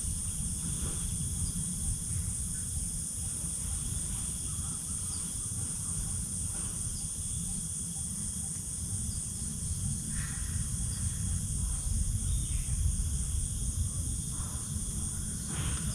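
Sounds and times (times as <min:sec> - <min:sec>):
crickets chirping: 0:00.0 - 0:15.9
low rumble: 0:09.7 - 0:15.9.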